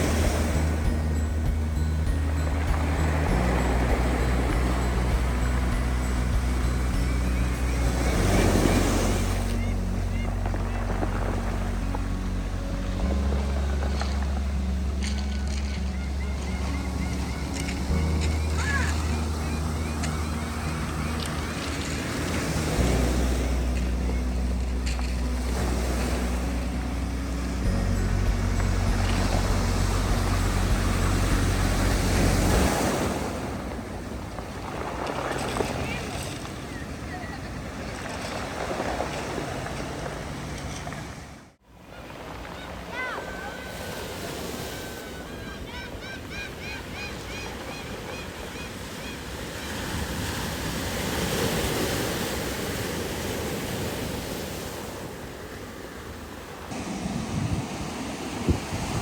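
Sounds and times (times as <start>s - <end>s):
steady low rumble: 0.0s - 32.8s
waves washing in: 0.0s - 59.0s.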